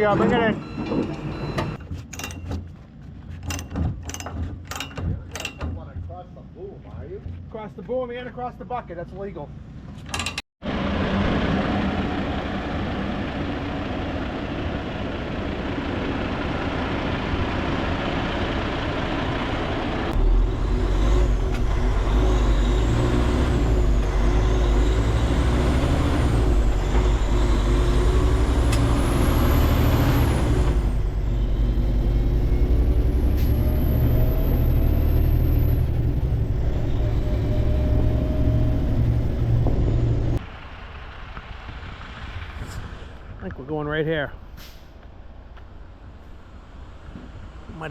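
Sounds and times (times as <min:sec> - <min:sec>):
diesel truck engine running: 0:10.6 - 0:43.3.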